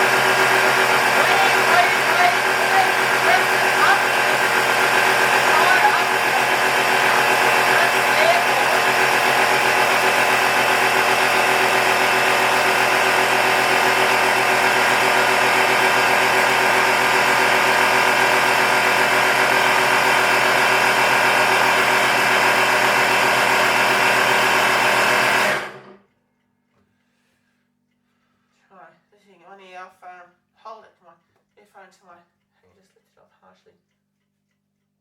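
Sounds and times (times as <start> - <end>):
air compressor pump running: 0.0 - 26.0.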